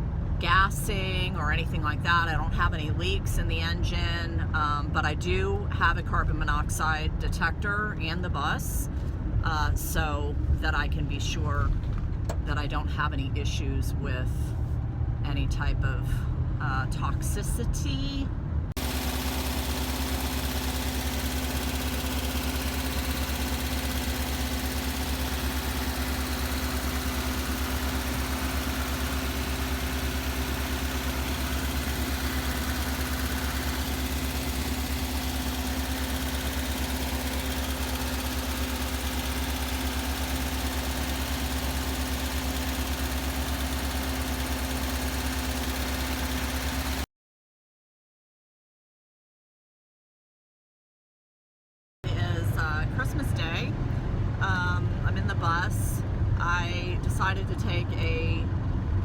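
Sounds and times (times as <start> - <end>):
car engine idling: 18.8 - 47.0, 52.1 - 59.0.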